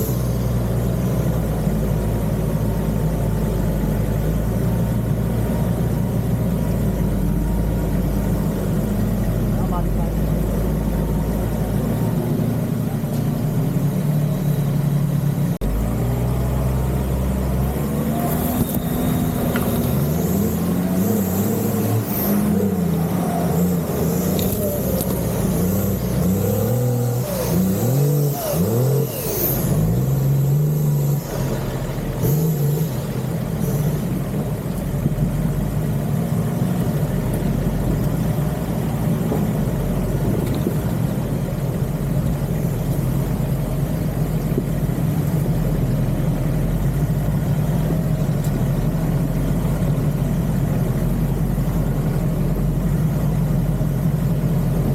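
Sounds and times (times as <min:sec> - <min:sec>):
off-road engine revving: 0:00.0 - 0:54.9.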